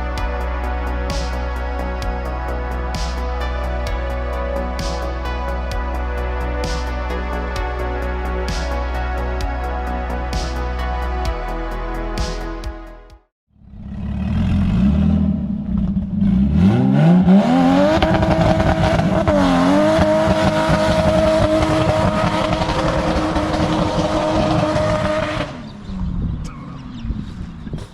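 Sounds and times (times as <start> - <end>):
car engine revving: 13.6 - 27.5.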